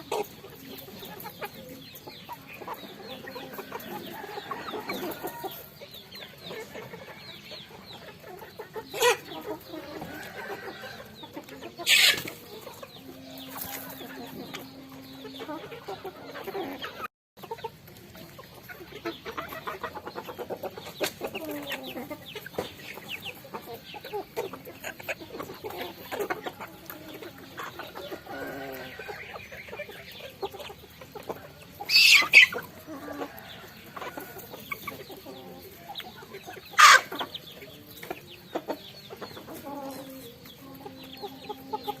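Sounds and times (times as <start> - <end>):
chickens clucking: 0.0 - 42.0
chicken squawk: 11.8 - 12.4, 31.8 - 33.4, 36.7 - 37.3.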